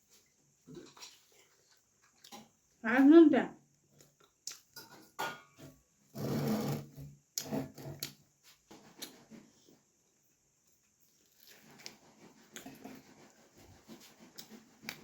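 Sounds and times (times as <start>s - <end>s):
chewing: 0.7s - 2.6s, 11.1s - 15.0s
mouth clicks and smacks: 4.0s - 4.7s.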